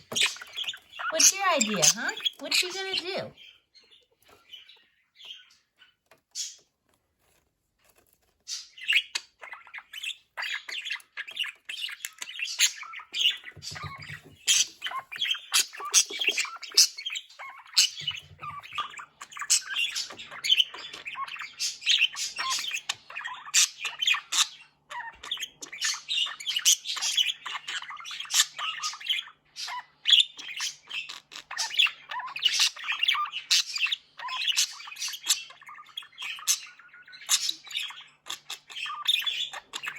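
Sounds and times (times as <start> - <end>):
budgerigars chattering: 0.0 - 6.7, 8.5 - 39.9.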